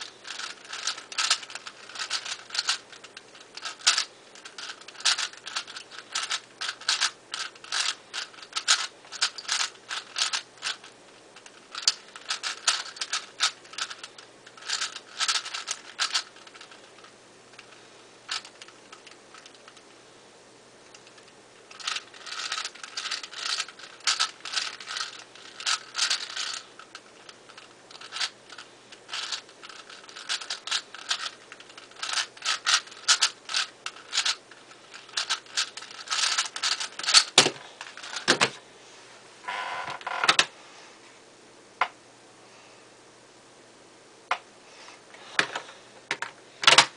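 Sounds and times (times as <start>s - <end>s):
speed cube clicking and scraping: 0.0s - 19.9s, 20.9s - 38.3s.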